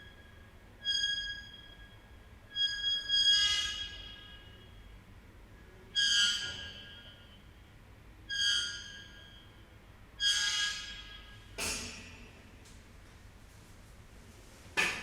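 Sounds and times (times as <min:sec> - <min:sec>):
metal screeching on ceramic tile: 0:06.0 - 0:07.1.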